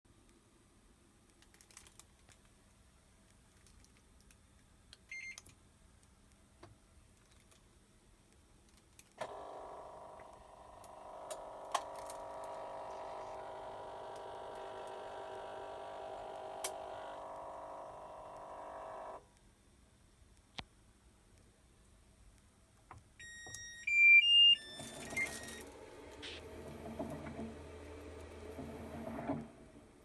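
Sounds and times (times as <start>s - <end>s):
washing machine whine: 9.2s - 19.2s, 23.2s - 30.0s
sharp clicks: 10.2s - 19.2s
electronic beep: 23.2s - 26.4s.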